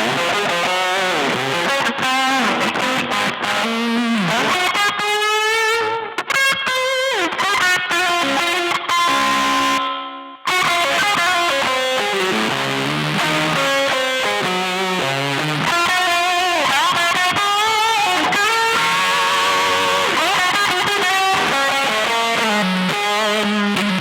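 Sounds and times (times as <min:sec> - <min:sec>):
fuzz electric guitar lead lines: 0:00.0 - 0:24.0.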